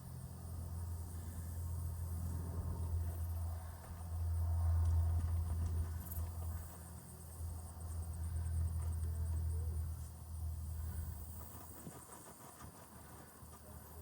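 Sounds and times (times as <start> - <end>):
low rumble: 1.9 - 5.9.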